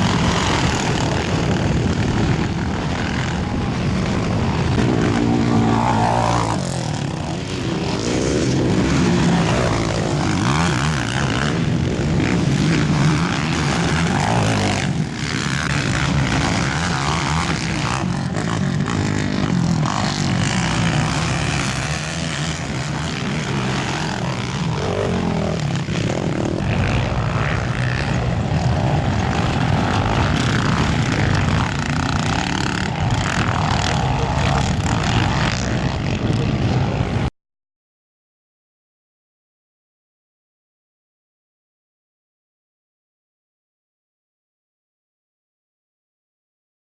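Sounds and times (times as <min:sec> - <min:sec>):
quad engines revving: 0:00.0 - 0:37.3.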